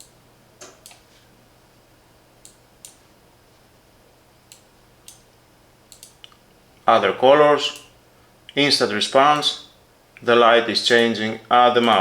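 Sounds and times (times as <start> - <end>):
computer mouse buttons clicking: 4.5 - 5.2, 5.9 - 6.4.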